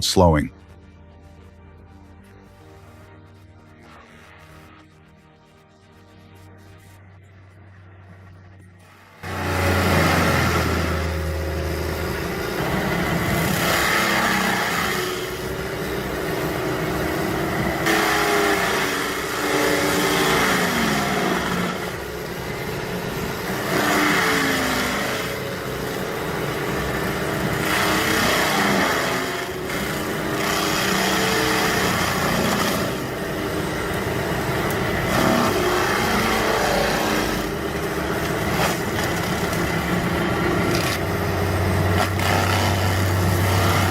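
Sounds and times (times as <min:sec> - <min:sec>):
mulcher engine running hard: 0:08.8 - 0:43.9
drum shredding vegetation: 0:09.2 - 0:43.9.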